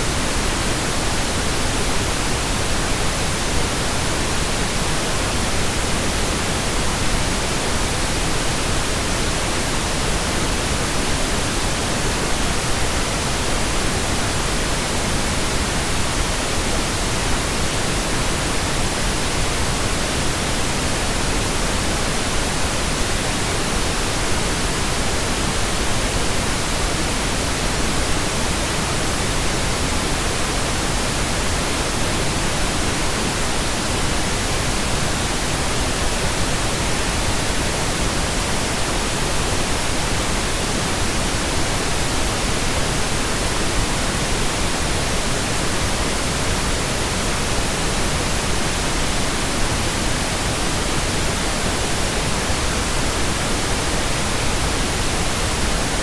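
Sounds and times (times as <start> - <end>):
steady pink noise hiss: 0.0 - 56.0.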